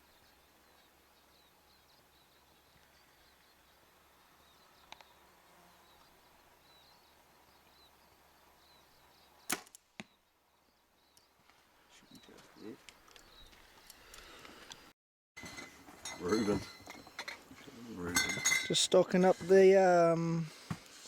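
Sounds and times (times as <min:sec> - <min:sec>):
arrow striking target: 0:09.5 - 0:10.1
bow string crack: 0:09.5 - 0:10.1.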